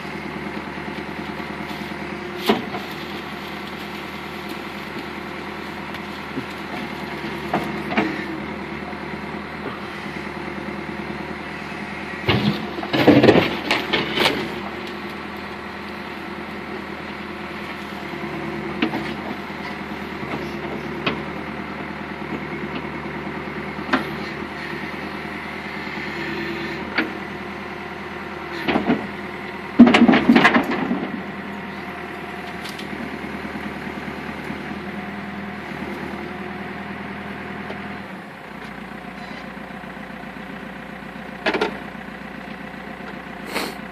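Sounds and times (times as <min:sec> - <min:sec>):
backhoe engine running: 0:00.0 - 0:43.9
brush cracking and knocking: 0:00.5 - 0:08.2, 0:32.4 - 0:33.0.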